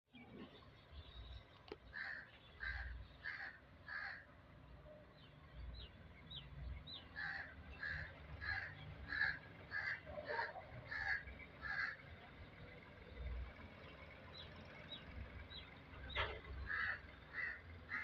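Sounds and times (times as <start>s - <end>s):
bird calling: 1.4s - 4.2s, 6.4s - 12.4s, 14.3s - 18.0s.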